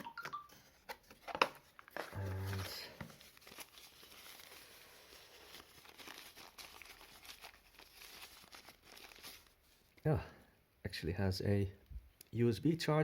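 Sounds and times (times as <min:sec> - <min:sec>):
packaging rustling and crinkling: 0:00.8 - 0:10.0.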